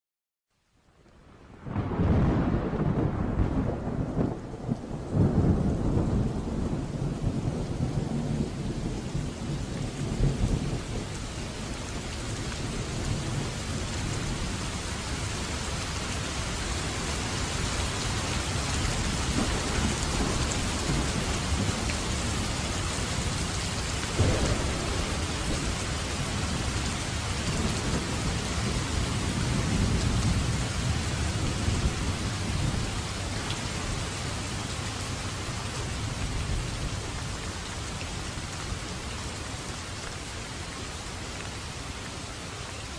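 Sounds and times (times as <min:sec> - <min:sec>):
steady rain: 0:00.5 - 0:42.9
thunder claps: 0:01.6 - 0:11.1, 0:19.1 - 0:22.6, 0:24.1 - 0:33.1
rolling thunder: 0:01.6 - 0:15.9, 0:18.3 - 0:37.0.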